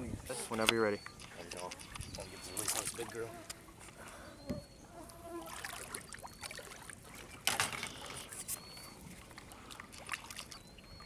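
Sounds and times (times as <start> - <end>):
water splashing against boat: 0.3 - 3.5, 5.4 - 11.0.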